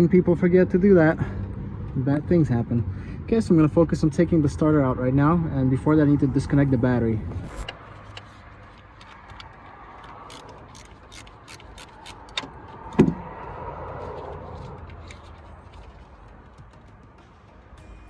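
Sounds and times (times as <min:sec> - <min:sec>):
ratchet wrench clicking: 0:06.8 - 0:08.3, 0:09.0 - 0:12.9.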